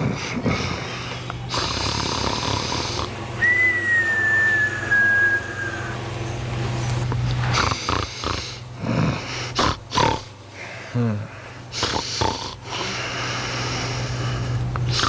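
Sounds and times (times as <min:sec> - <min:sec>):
cat snoring: 0:00.0 - 0:03.2, 0:07.5 - 0:10.3, 0:11.1 - 0:15.0.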